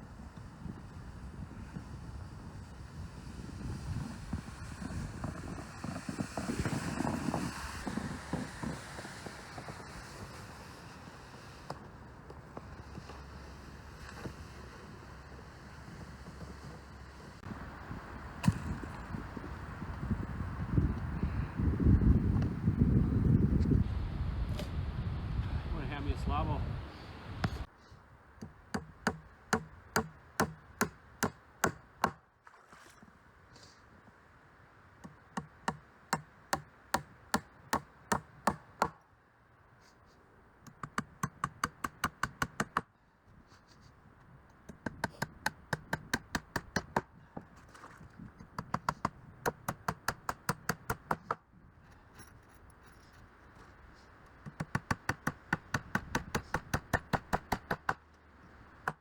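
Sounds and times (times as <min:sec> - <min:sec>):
hammer striking timber: 0:28.7 - 0:32.2, 0:35.4 - 0:39.0, 0:40.7 - 0:42.9, 0:44.7 - 0:47.1, 0:48.5 - 0:51.4, 0:54.4 - 0:58.0.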